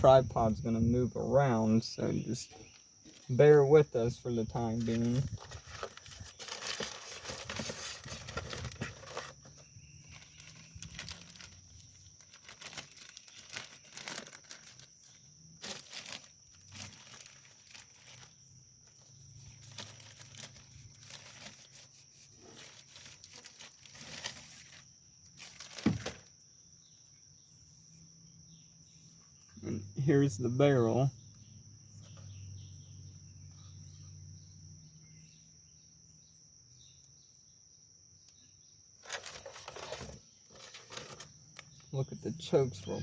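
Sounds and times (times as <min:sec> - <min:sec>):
crickets droning: 0:00.0 - 0:43.0
packaging rustling and crinkling: 0:04.8 - 0:26.3, 0:39.0 - 0:41.8.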